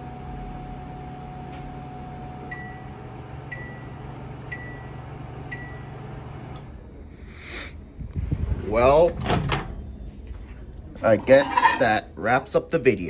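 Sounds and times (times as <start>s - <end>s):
microwave oven humming: 0.0s - 11.2s
microwave click: 1.4s - 1.8s.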